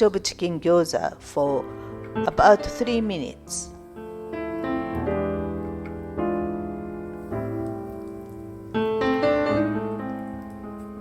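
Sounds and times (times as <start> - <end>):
slow piano chords: 0.6 - 11.0.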